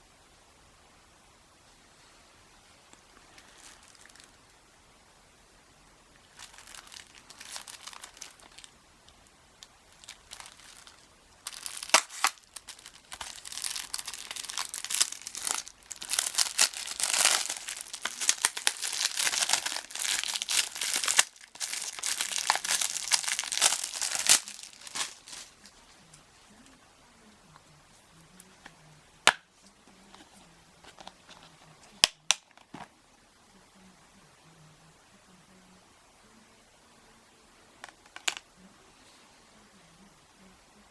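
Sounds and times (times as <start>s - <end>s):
plastic wrap crinkling: 3.2s - 4.5s, 6.2s - 26.1s, 30.0s - 32.9s, 37.8s - 38.4s.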